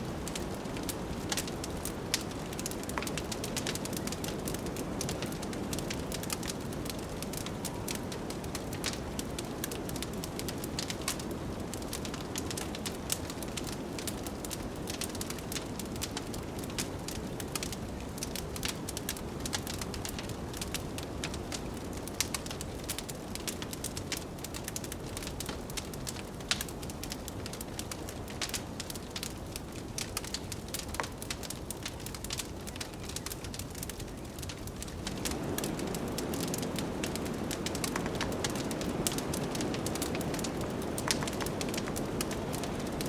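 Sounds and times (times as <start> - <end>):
wood fire crackling and popping: 0.0 - 43.0
blizzard wind rushing: 34.9 - 43.0.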